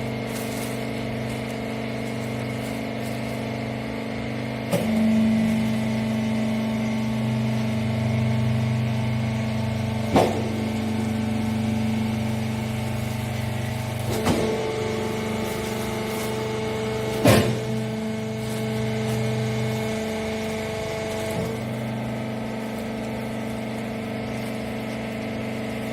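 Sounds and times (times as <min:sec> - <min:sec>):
hydraulic power unit humming: 0:00.0 - 0:25.9
sharp clunk: 0:10.1 - 0:10.6, 0:17.2 - 0:17.7.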